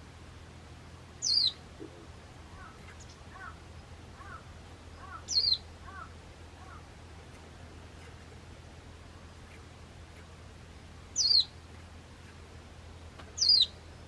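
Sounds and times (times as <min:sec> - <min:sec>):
steady low hum: 0:00.0 - 0:14.0
faint low bird chirps: 0:01.2 - 0:04.4, 0:05.0 - 0:06.8, 0:11.1 - 0:11.6, 0:13.4 - 0:14.0
bird high falling calls: 0:01.2 - 0:06.9, 0:11.1 - 0:11.6, 0:13.4 - 0:13.8.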